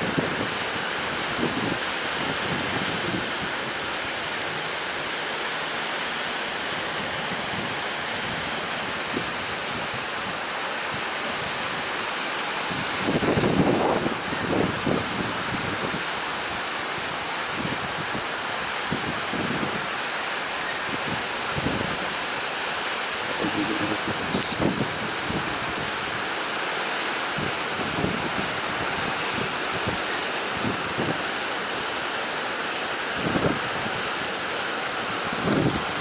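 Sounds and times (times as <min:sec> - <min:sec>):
wind buffeting microphone: 0:00.0 - 0:04.8, 0:12.6 - 0:19.9, 0:23.3 - 0:26.3, 0:27.2 - 0:31.4, 0:33.0 - 0:34.4, 0:35.0 - 0:36.0
sea surf and breaking waves: 0:00.0 - 0:36.0.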